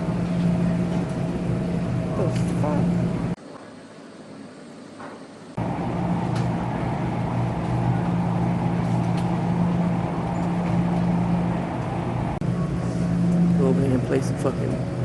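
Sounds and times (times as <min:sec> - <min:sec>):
laundry machines humming: 0:00.0 - 0:15.0
low drone: 0:05.6 - 0:15.0.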